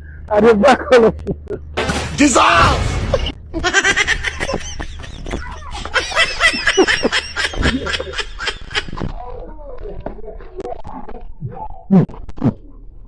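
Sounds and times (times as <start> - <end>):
laughter in short bursts: 3.2 - 9.0.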